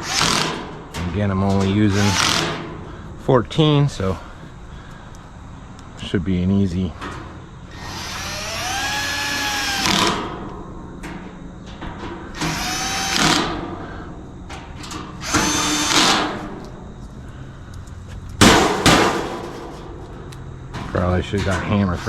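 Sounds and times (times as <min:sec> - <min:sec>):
power drill driving screws: 0:00.0 - 0:00.7, 0:01.8 - 0:02.6, 0:07.7 - 0:10.3, 0:12.4 - 0:13.6, 0:15.2 - 0:16.4.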